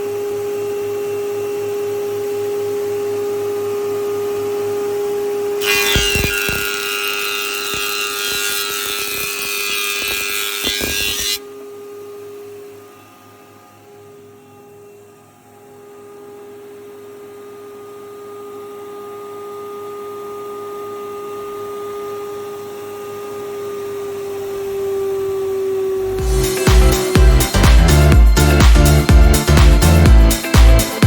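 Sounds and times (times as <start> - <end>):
thicknesser motor humming: 25.9 - 31.0
music with a beat: 26.2 - 31.0.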